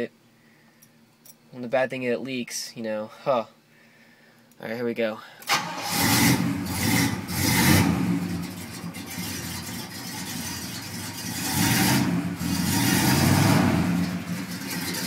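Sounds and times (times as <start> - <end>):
engine rumbling and revving: 5.5 - 15.0.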